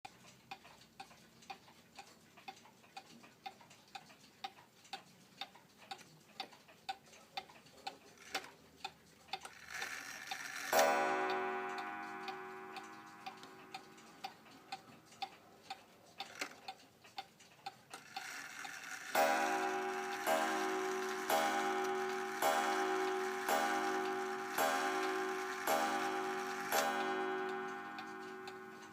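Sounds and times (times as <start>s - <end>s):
mantel clock ticking: 0.0s - 28.9s
clock mechanism whirring: 0.4s - 28.9s
clock striking coil gong: 10.0s - 14.7s, 18.8s - 28.9s.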